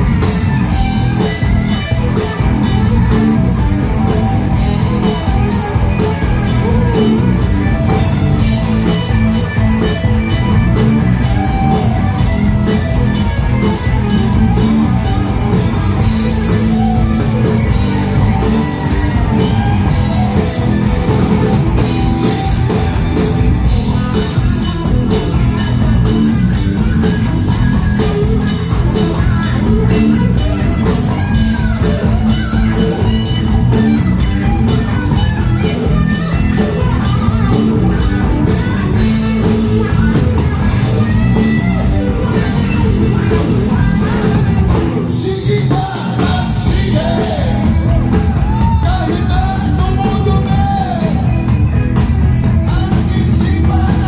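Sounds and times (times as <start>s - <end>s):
electric guitar: 0.0s - 54.0s
steady drum beat: 0.0s - 54.0s
person singing: 43.7s - 51.4s, 52.6s - 54.0s.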